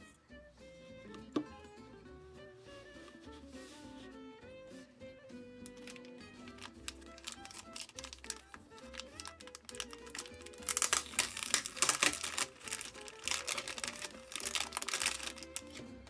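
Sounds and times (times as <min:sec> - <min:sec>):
soft background music: 0:00.0 - 0:16.0
packaging crinkling: 0:05.6 - 0:16.0.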